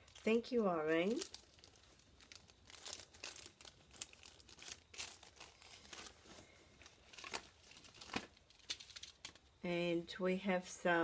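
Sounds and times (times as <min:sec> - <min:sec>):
packets crinkling and rustling: 0:00.0 - 0:09.5.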